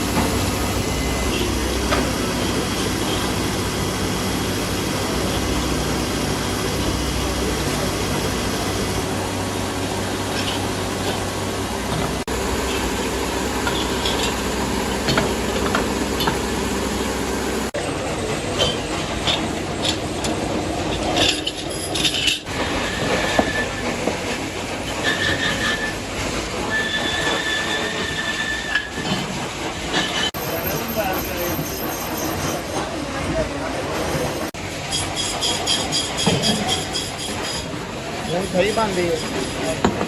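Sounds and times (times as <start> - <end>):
metalworking machine noise: 0.0 - 40.0
metal clanks and clicks: 13.6 - 14.4.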